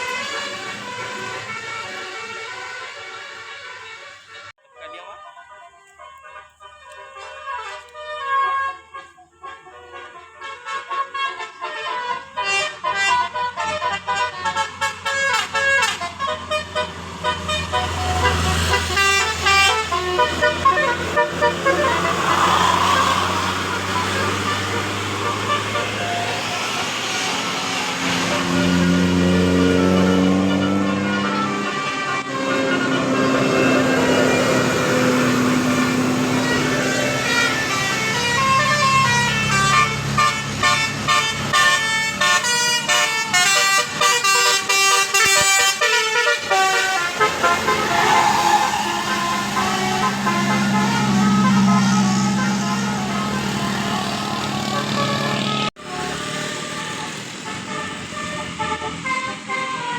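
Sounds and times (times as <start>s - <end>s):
bus engine humming: 0.0s - 4.5s, 11.9s - 59.9s
bus horn playing a tune: 0.0s - 59.9s
rush of noise: 21.8s - 28.3s.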